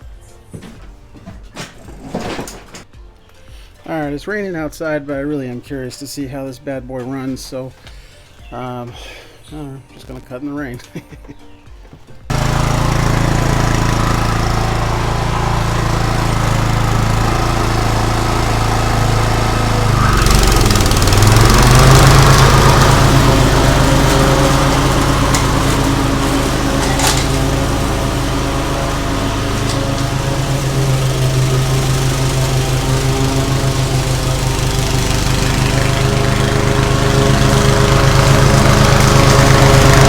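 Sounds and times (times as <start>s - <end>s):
lawn mower engine running: 12.3s - 40.0s.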